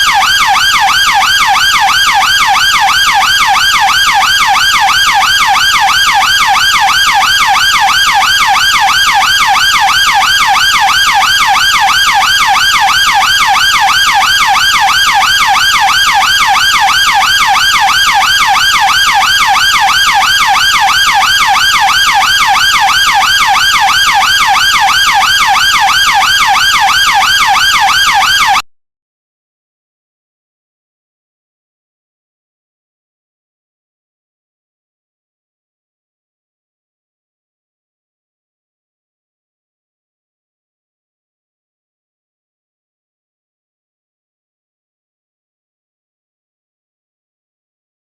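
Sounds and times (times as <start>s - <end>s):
police siren yelping: 0.0s - 28.6s.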